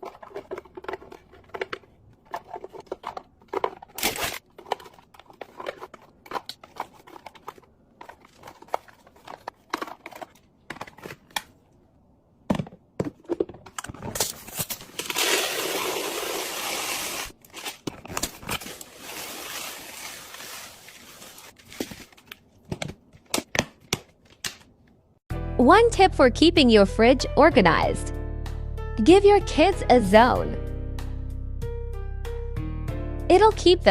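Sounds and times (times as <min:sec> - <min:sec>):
wrappers crinkling: 0:02.4 - 0:10.5, 0:14.2 - 0:22.4.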